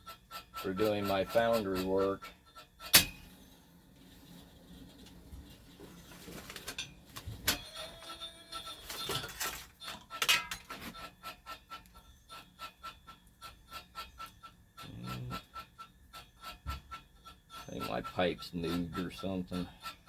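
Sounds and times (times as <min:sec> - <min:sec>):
sharp clicks and knocks: 0:02.2 - 0:03.4, 0:15.4 - 0:18.0
wire stripper machine ticking: 0:09.8 - 0:20.0.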